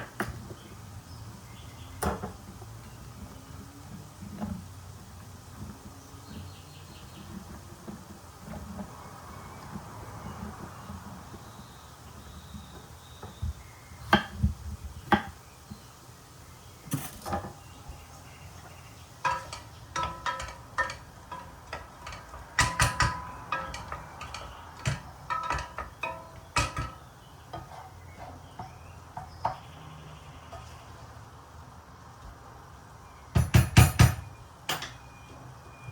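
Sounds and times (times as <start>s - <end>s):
utensils and dishes clinking: 16.9s - 17.6s, 19.2s - 28.8s.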